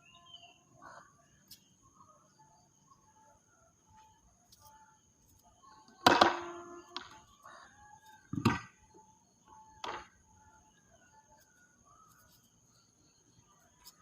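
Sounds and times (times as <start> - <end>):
faint chirps: 0.0 - 14.0.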